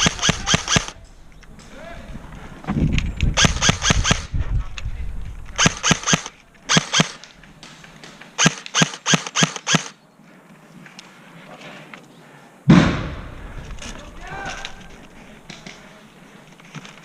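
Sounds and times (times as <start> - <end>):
airsoft rifle firing: 0.0 - 1.0, 3.4 - 4.3, 5.6 - 7.2, 12.7 - 13.5.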